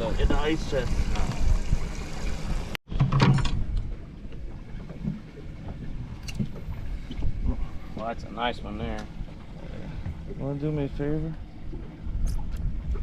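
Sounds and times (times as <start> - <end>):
wind rumbling on microphone: 0.0 - 13.0.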